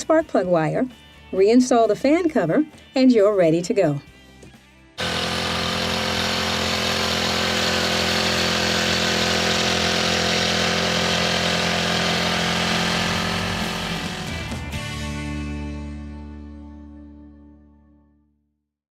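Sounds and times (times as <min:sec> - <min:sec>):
small tiller engine running: 0:05.0 - 0:14.8.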